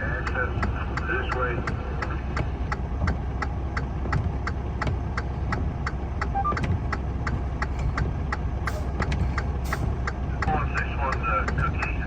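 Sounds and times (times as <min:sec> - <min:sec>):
turn signal ticking: 0:00.0 - 0:12.0
vehicle engine idling: 0:00.0 - 0:12.0.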